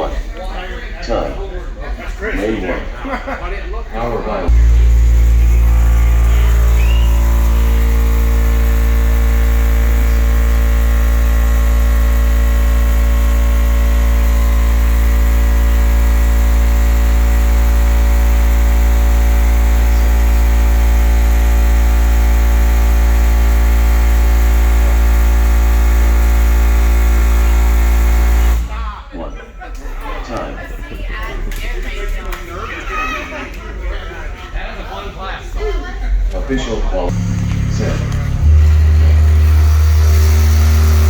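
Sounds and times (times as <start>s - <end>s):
subwoofer deep bass tone: 4.4s - 28.8s, 37.1s - 41.0s.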